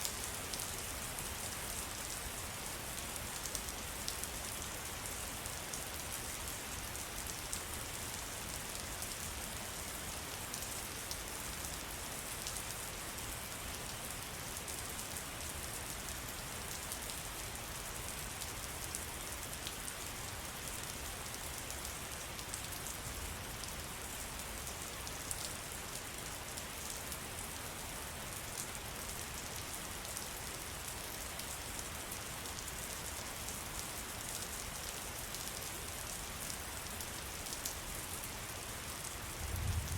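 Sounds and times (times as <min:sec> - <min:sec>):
rain falling on leaves: 0:00.0 - 0:39.9.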